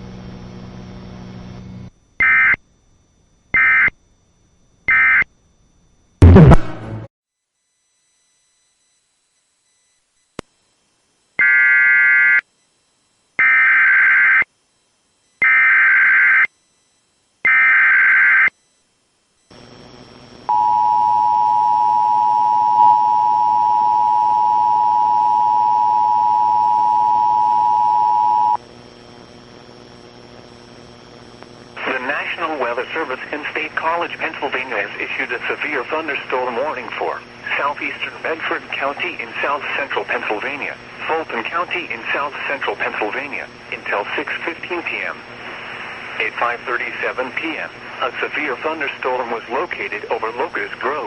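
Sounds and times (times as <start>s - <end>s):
low hiss and hum: 7.6s - 51.0s
steady attention signal tone: 20.5s - 28.6s.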